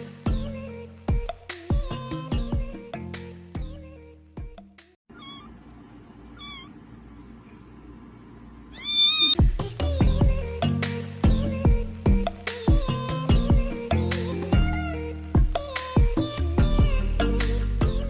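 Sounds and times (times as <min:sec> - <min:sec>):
cat meowing: 0:05.1 - 0:05.6, 0:06.4 - 0:06.8, 0:08.7 - 0:09.4
background music: 0:09.4 - 0:18.0.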